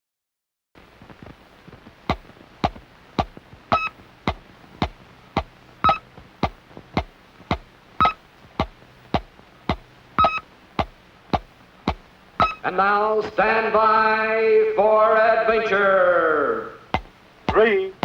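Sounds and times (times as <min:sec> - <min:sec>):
sharp electronic clicks: 0:02.1 - 0:12.7
short high beep: 0:10.2 - 0:10.4, 0:12.4 - 0:12.6.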